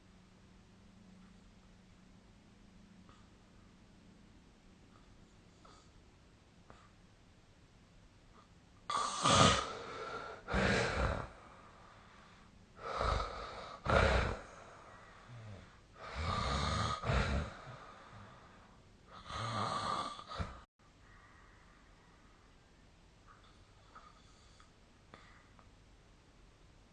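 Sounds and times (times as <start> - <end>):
person snoring: 8.9 - 12.0, 12.8 - 20.6.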